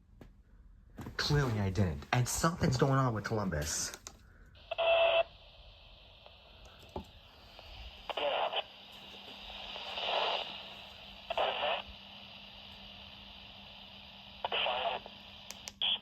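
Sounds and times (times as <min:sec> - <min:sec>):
radio static hiss: 0:04.6 - 0:16.0.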